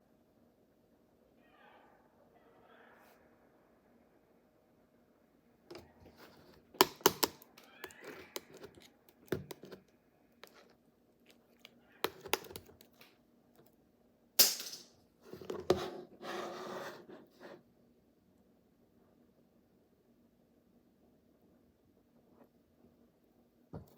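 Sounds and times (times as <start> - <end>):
slime squishing: 5.7 - 13.0.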